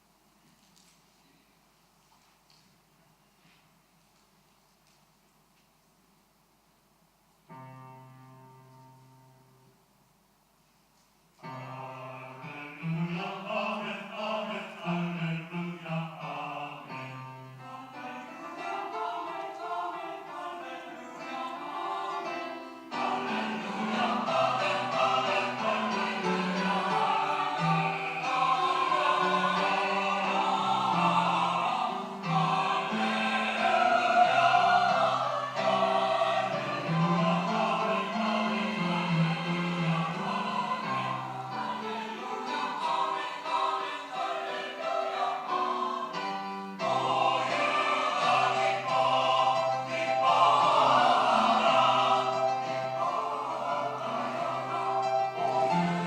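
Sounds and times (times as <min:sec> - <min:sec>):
church choir singing in harmony: 0:11.4 - 0:56.0.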